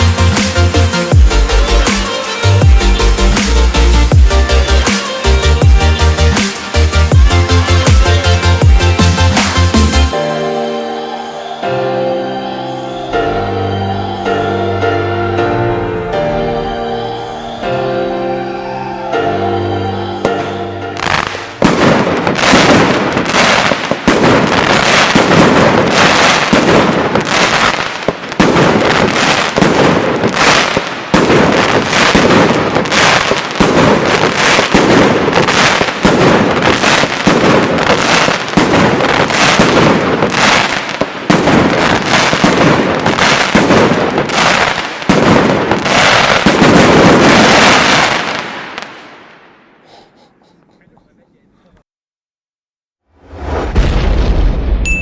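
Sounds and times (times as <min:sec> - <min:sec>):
firework battery firing: 0:21.0 - 0:49.4.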